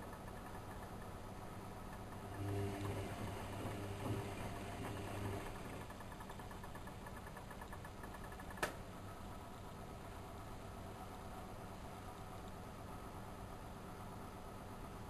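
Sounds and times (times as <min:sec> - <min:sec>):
faint regular ticking: 0:00.0 - 0:01.2, 0:04.7 - 0:08.8
washing machine motor hum: 0:00.0 - 0:15.0
sharp click: 0:07.5 - 0:08.8.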